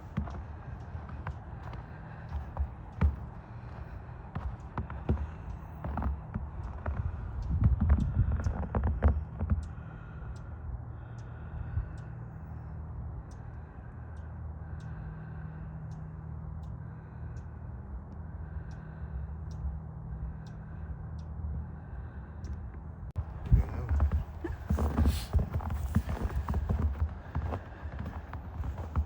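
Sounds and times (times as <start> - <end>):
footsteps crunching in snow: 23.4 - 29.0.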